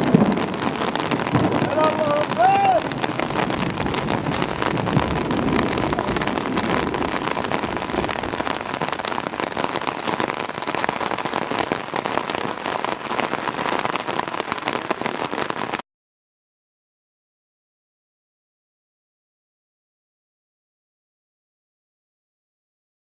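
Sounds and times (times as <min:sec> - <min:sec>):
steady rain falling: 0:00.0 - 0:15.8.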